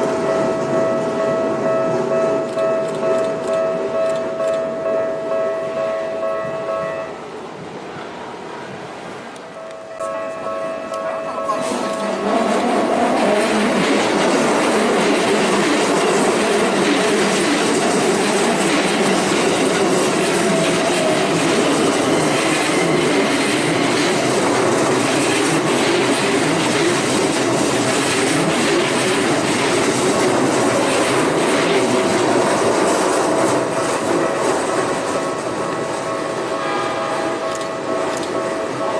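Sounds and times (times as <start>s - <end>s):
electric train passing: 0.0s - 38.9s.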